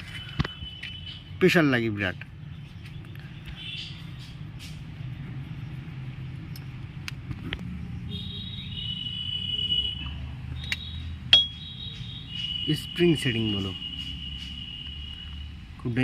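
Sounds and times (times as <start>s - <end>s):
insect chirping: 8.0s - 15.8s
sharp metallic clicks: 10.6s - 15.0s.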